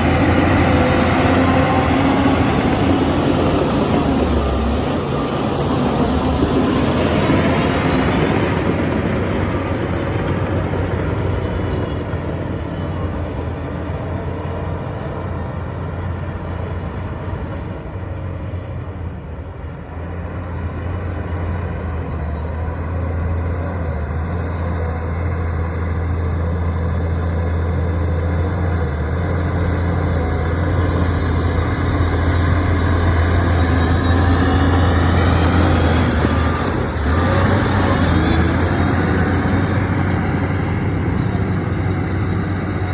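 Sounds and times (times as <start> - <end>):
bulldozer diesel engine droning: 0.0 - 42.9.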